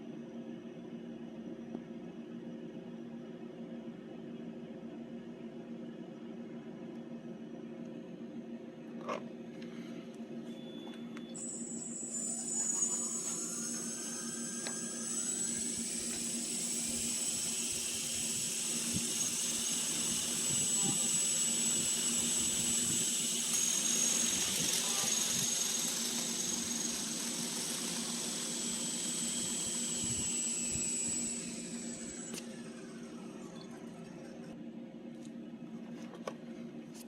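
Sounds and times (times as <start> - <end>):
electric motor whine: 11.4 - 34.6
low rotor hum: 11.4 - 34.6.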